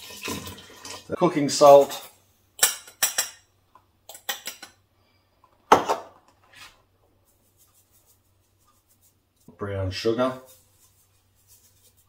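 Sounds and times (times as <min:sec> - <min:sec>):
kitchen utensils clinking: 0:00.0 - 0:03.5, 0:04.1 - 0:04.8.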